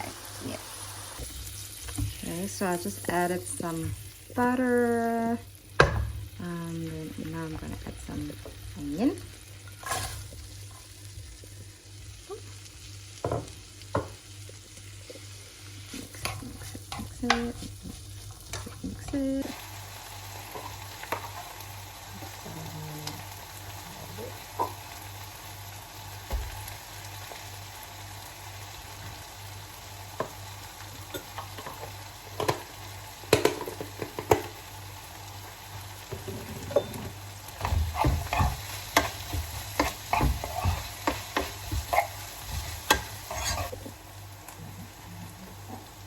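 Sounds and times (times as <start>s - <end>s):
onions sizzling in a pan: 0.0s - 46.0s
utensil scraping and knocking pan: 37.6s - 43.7s.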